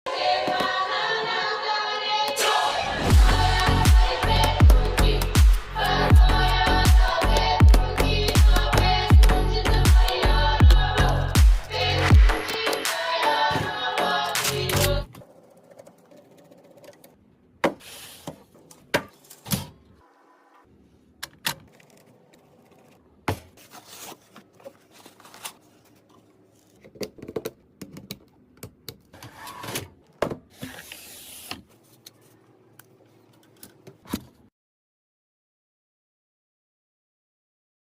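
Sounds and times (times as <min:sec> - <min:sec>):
scraping rustles: 0:23.6 - 0:26.8.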